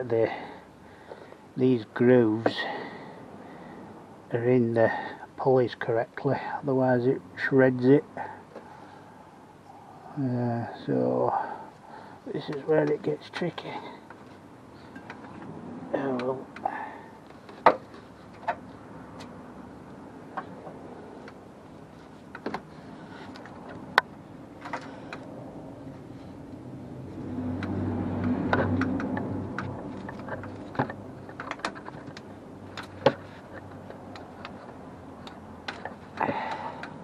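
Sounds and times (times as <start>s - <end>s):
tools clicking and knocking on metal: 14.9s - 15.5s, 22.3s - 22.7s, 27.6s - 37.0s.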